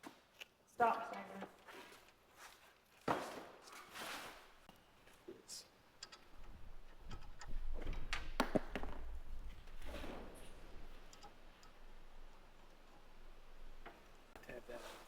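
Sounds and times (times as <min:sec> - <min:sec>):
hardware knocking and clicking: 0:05.9 - 0:09.8, 0:10.5 - 0:14.3.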